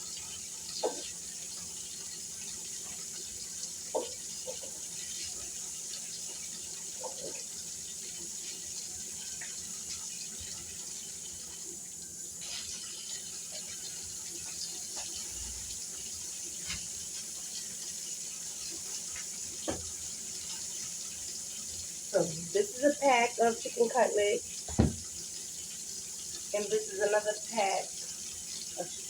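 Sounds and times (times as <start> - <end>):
tap running into a sink: 0.7 - 1.6, 3.8 - 5.3, 18.7 - 20.6, 24.5 - 25.5
light knocks: 24.7 - 25.1.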